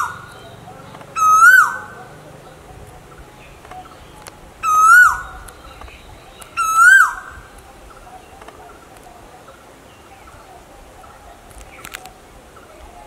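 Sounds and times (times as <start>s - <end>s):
koel calling: 0.0s - 2.6s, 3.4s - 5.6s, 6.5s - 7.5s.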